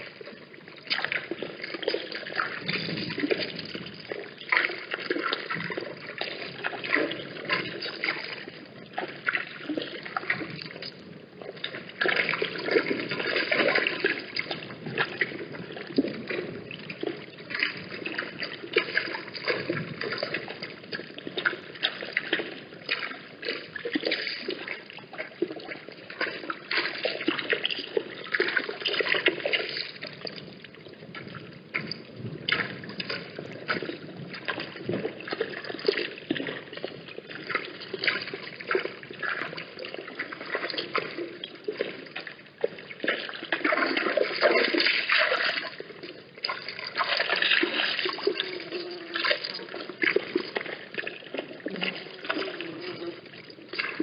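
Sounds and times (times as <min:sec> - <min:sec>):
water trickling and splashing: 0:00.0 - 0:54.0.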